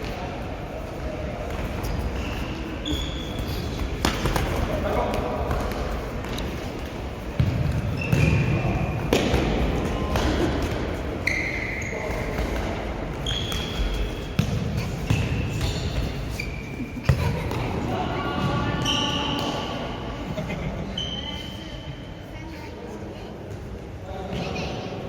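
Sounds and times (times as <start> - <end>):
shoe squeaks: 1.8 - 4.0, 7.8 - 8.8, 11.2 - 12.5, 13.2 - 17.2, 18.8 - 19.6, 20.9 - 22.0
ball thudding on indoor court: 3.8 - 6.4, 7.4 - 10.9, 12.2 - 16.0.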